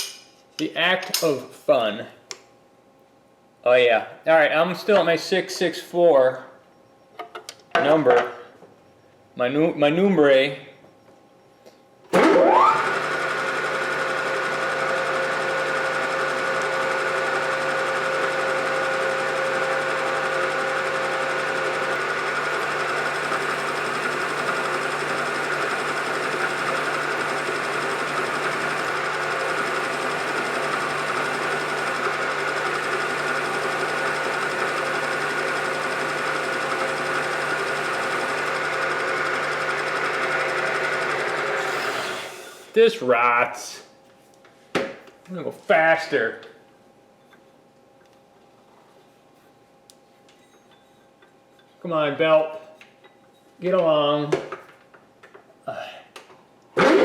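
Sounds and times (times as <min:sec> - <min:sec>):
mechanical hum: 0:00.0 - 0:57.0
machine tool motor whine: 0:12.1 - 0:42.8.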